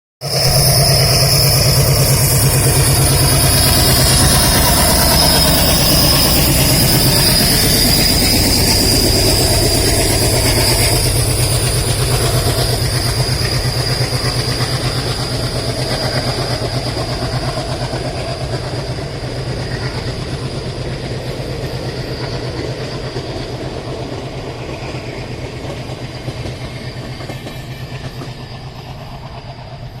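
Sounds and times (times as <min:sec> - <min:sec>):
train clattering on rails: 0:00.2 - 0:30.0
high steady whine: 0:00.3 - 0:27.4.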